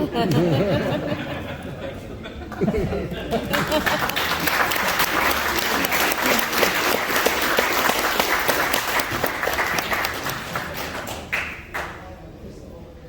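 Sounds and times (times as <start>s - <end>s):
audience applauding: 3.4s - 12.0s.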